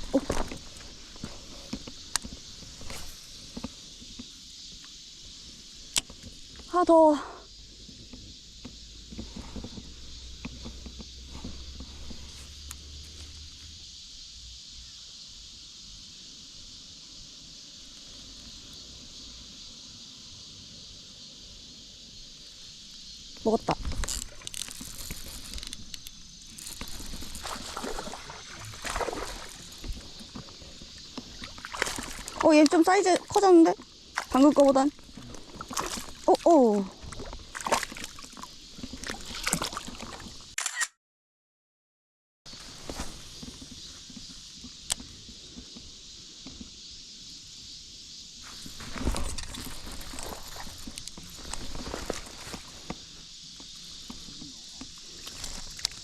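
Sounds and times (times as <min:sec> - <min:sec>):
insects buzzing: 0:00.0 - 0:40.6, 0:42.5 - 0:56.0
rustling and shuffling: 0:23.8 - 0:32.3, 0:42.5 - 0:44.7, 0:48.4 - 0:56.0
fishing reel rattling: 0:23.9 - 0:28.1
fish splashing in water: 0:26.5 - 0:30.3, 0:31.3 - 0:32.8, 0:35.1 - 0:36.4, 0:37.1 - 0:40.4
sharp click: 0:40.5 - 0:41.0.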